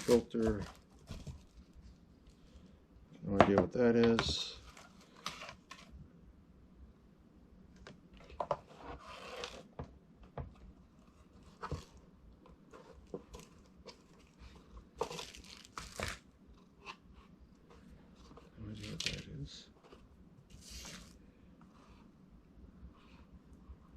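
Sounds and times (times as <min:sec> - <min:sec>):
plastic packaging crinkling: 0:13.0 - 0:16.3.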